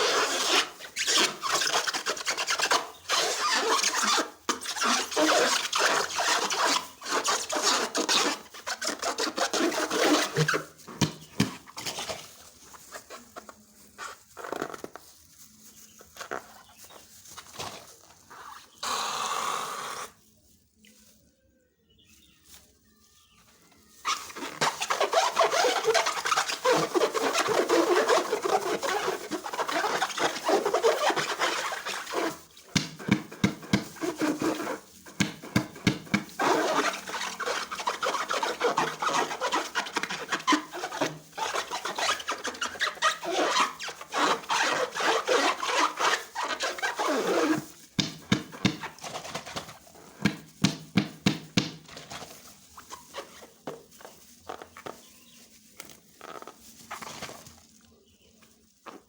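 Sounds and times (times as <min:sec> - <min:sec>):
sharp crackling pops: 0:24.0 - 0:42.2.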